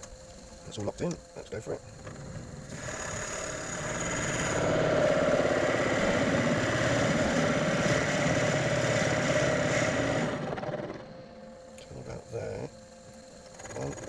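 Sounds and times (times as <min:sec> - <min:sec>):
wood lathe running: 0:02.7 - 0:11.0.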